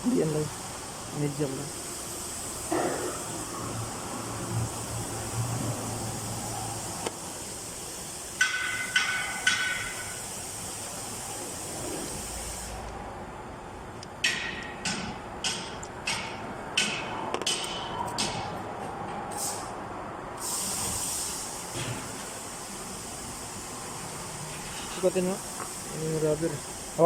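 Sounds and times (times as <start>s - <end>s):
steady hiss: 0.0s - 13.0s, 20.4s - 27.0s.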